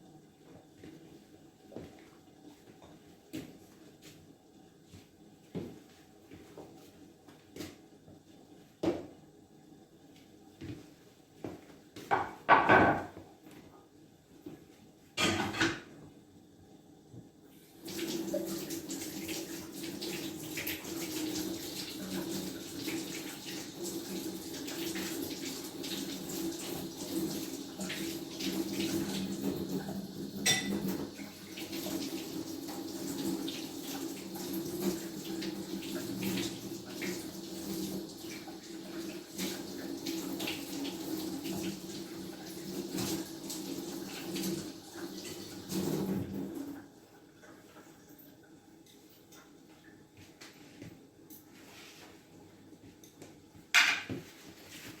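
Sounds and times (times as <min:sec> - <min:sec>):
tap running into sink: 0:24.7 - 0:32.2.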